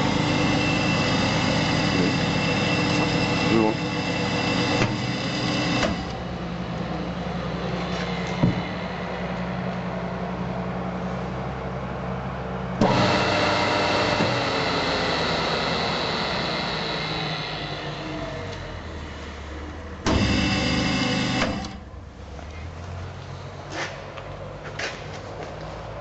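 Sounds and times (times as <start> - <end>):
high-pitched machine running: 0.0 - 6.2, 12.8 - 18.9
grinding machine electric hum: 0.0 - 23.7.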